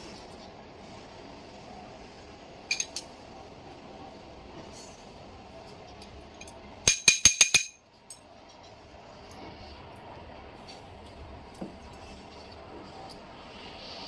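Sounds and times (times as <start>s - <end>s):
low steady background noise: 0.0s - 14.0s
ringing metallic clinks: 6.4s - 8.3s.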